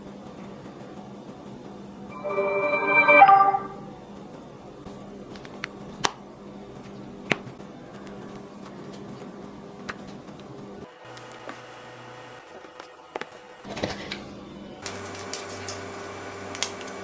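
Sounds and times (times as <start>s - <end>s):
electronic chime: 2.1s - 4.0s.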